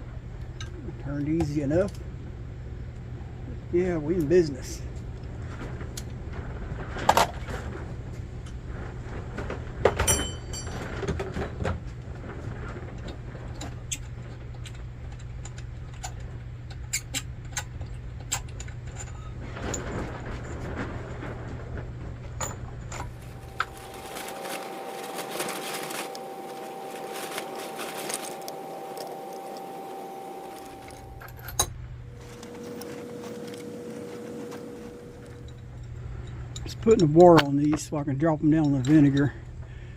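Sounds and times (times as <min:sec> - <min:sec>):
metal parts clinking: 0:22.9 - 0:33.7
low hum: 0:22.9 - 0:36.7
faint whine: 0:22.9 - 0:37.8
lantern hissing: 0:23.1 - 0:31.2.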